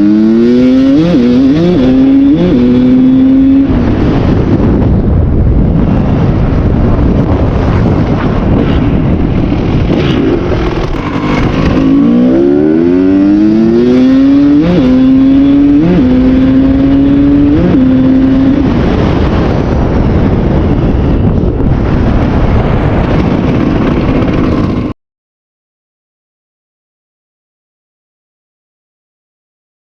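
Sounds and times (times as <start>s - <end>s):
two-stroke motorcycle engine revving: 0.0s - 4.4s, 8.3s - 20.0s.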